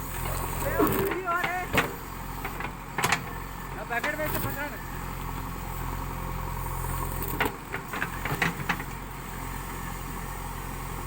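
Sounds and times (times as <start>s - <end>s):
diesel engine idling: 0.0s - 11.0s
sharp metallic knocks and clatters: 0.2s - 3.4s.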